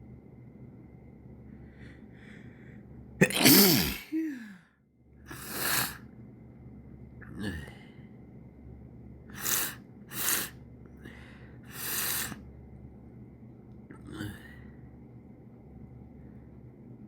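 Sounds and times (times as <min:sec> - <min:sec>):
person sneezing: 0:03.2 - 0:04.6
sharp breaths: 0:09.3 - 0:12.4.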